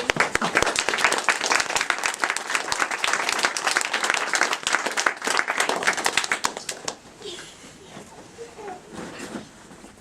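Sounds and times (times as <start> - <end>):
audience applauding: 0.0 - 7.0.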